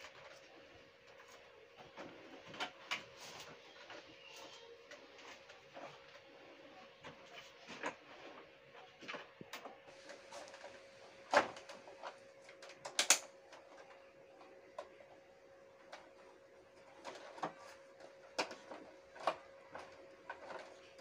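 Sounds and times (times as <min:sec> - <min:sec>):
faint steady hum: 0:00.0 - 0:21.0
clicks and knocks of hard parts: 0:12.5 - 0:13.3.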